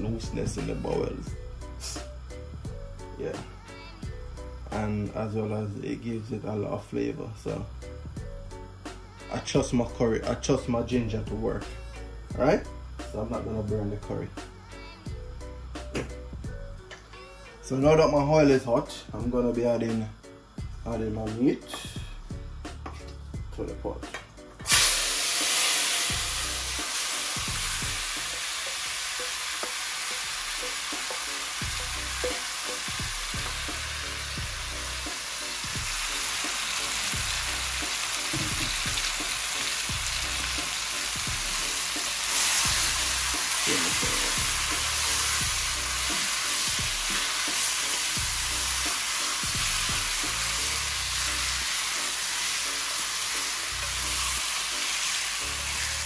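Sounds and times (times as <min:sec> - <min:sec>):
meat sizzling in hot oil: 0:00.0 - 0:11.4, 0:24.5 - 0:56.0.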